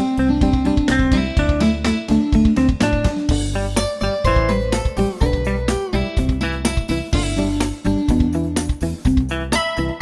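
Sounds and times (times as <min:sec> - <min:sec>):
plucked guitar notes: 0:00.0 - 0:10.0
steady music beat: 0:00.0 - 0:10.0.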